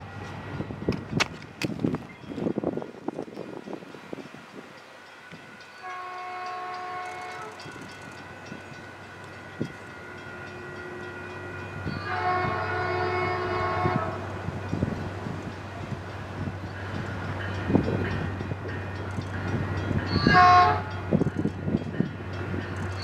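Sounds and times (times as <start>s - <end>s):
locomotive air horn blasts: 5.5s - 7.6s, 9.6s - 14.4s, 20.1s - 21.0s.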